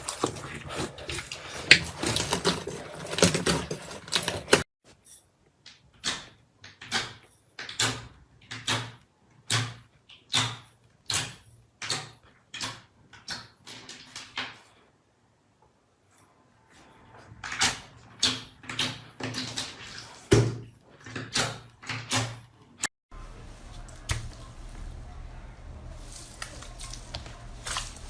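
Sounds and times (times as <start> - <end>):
slime squishing by hand: 23.4 - 28.0.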